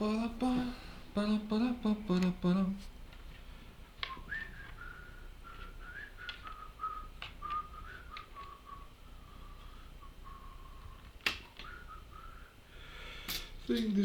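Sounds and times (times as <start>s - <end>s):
person whistling a slow tune: 4.0s - 12.9s
small parts clicking: 5.5s - 8.6s, 11.0s - 11.8s.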